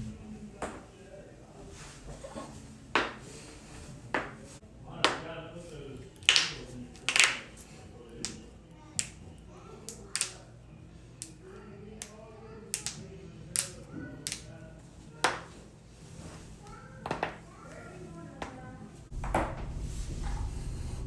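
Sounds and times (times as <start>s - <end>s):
quiet voices: 0.0s - 19.1s
joint cracks and pops: 9.9s - 10.4s.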